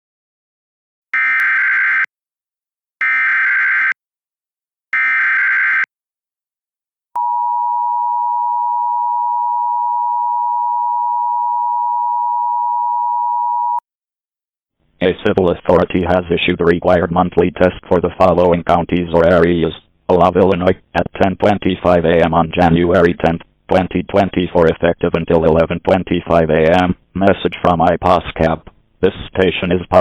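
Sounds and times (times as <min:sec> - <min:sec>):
steady attention tone: 0:07.2 - 0:13.8.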